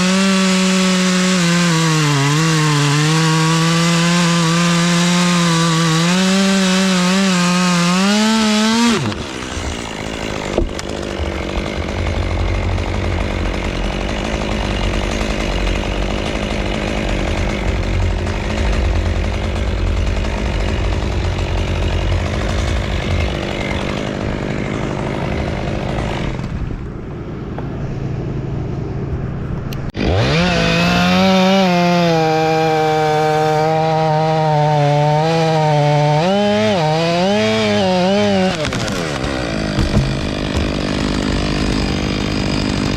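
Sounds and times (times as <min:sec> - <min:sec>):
chainsaw running: 0:00.0 - 0:27.4, 0:29.9 - 0:42.9.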